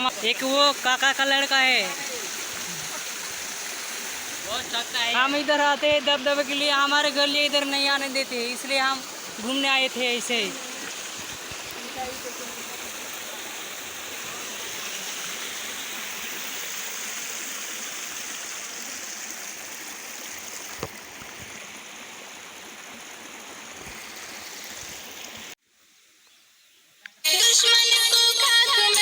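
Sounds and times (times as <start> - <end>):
waterfall rushing: 0.0 - 25.6
music: 27.2 - 29.0.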